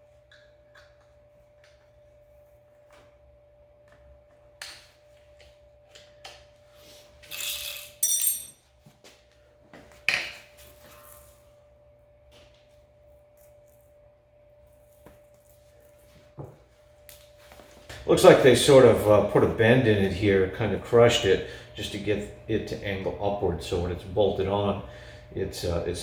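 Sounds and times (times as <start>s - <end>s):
faint steady hum: 0.0s - 26.0s
steel pieces clanking: 7.2s - 8.6s.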